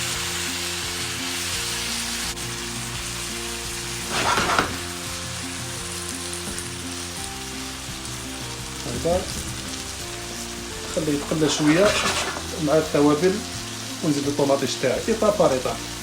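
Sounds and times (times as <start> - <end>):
background music with held notes: 0.0 - 16.0
food sizzling in a pan: 0.0 - 16.0.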